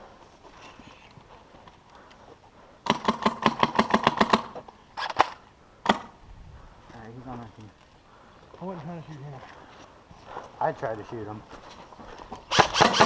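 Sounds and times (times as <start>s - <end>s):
airsoft gun firing: 2.8s - 6.2s, 12.5s - 13.0s.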